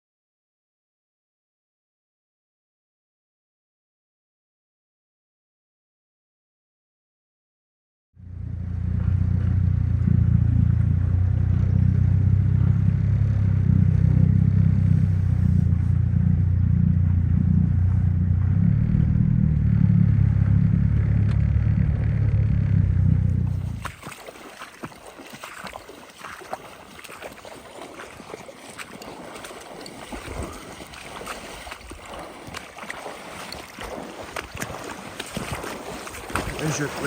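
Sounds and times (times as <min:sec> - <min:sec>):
boat engine running: 0:08.2 - 0:37.0
water noise: 0:08.2 - 0:37.0
wind: 0:08.2 - 0:37.0.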